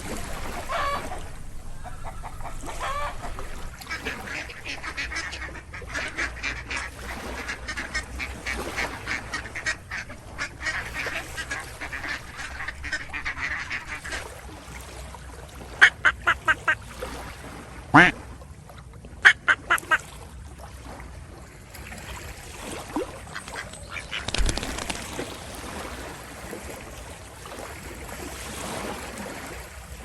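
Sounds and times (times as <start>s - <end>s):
ducks quacking: 0.0s - 14.4s, 15.8s - 16.8s, 17.9s - 18.2s, 19.2s - 20.1s, 23.2s - 25.2s.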